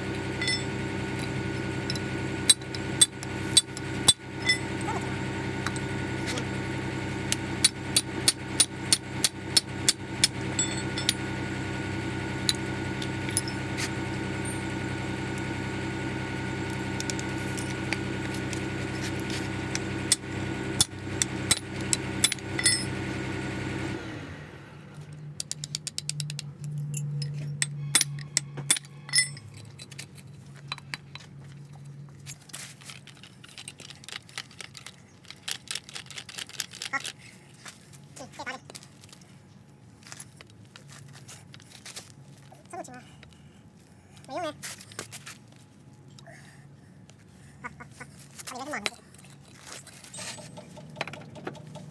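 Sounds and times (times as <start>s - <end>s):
engine running: 0.0s - 32.3s, 49.8s - 51.9s
metallic taps and clinks: 0.4s - 1.3s, 25.4s - 31.3s.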